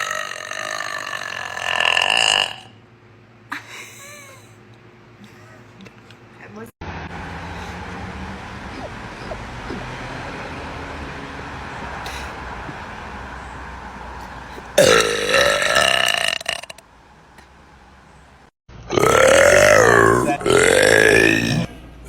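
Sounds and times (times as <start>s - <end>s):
woman burping loudly: 0.0s - 2.7s, 14.7s - 16.8s, 18.9s - 21.7s.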